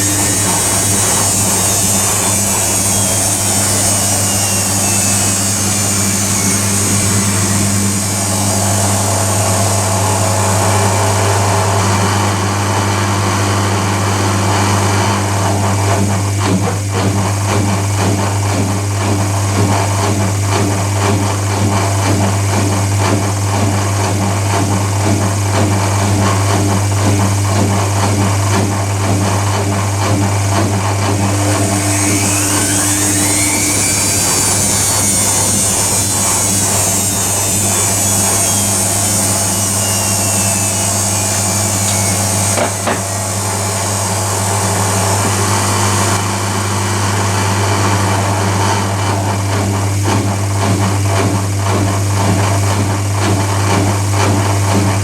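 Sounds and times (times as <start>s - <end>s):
motor whine: 0.0s - 18.0s, 30.0s - 49.8s
appliance motor hum: 0.0s - 55.0s
washing machine churning: 0.0s - 55.0s.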